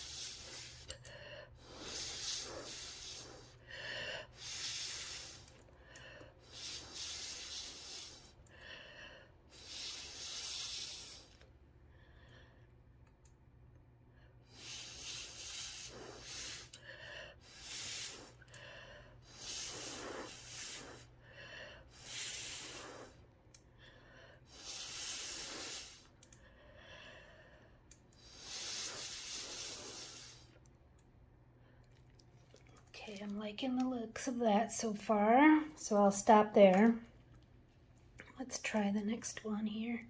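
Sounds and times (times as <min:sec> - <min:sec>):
blowing through metal straw: 0:00.0 - 0:00.9, 0:01.6 - 0:03.6, 0:04.3 - 0:05.6, 0:06.4 - 0:08.4, 0:09.5 - 0:11.4, 0:14.5 - 0:16.8, 0:17.4 - 0:18.5, 0:19.3 - 0:21.2, 0:21.9 - 0:23.2, 0:24.5 - 0:26.2, 0:28.2 - 0:30.6.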